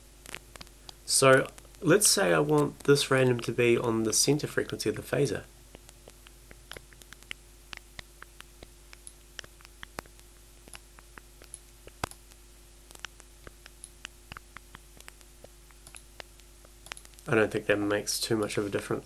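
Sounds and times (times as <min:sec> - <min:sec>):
synthesized crackle: 0:00.0 - 0:19.0.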